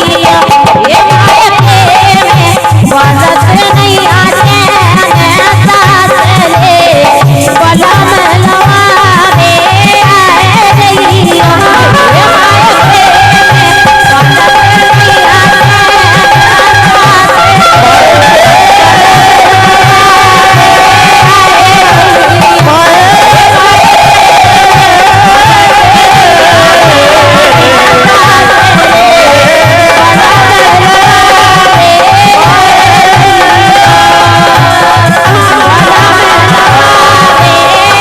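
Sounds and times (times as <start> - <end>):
hand drum beat: 0.0 - 38.0.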